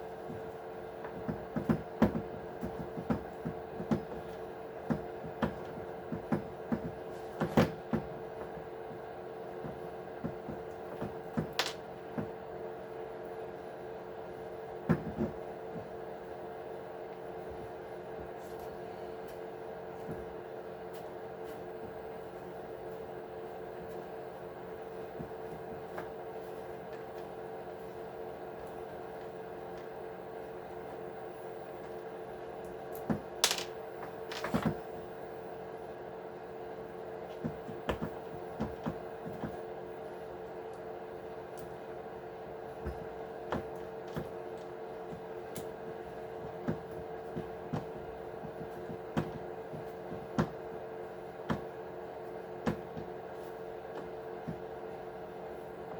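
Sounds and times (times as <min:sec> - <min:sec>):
steady hum: 0:00.0 - 0:55.9.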